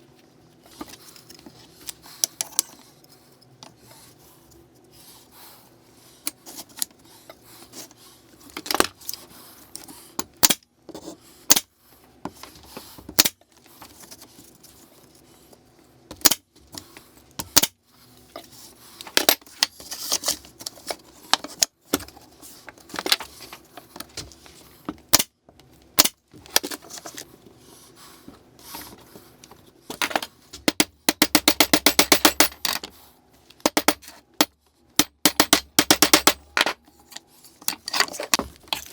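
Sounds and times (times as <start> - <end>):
hammer nailing wood: 30.7 - 32.7, 33.7 - 34.1, 35.0 - 36.7
hammer striking steel pins: 30.7 - 32.8, 33.7 - 36.8.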